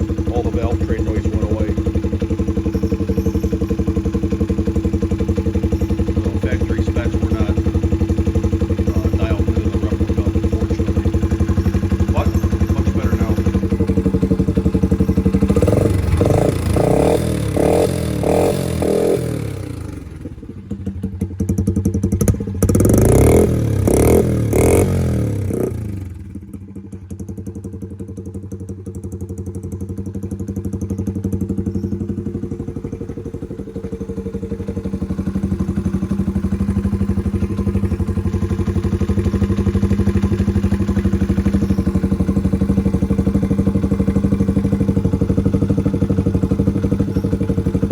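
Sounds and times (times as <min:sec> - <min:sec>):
motorcycle engine revving and idling: 0:00.0 - 0:47.9.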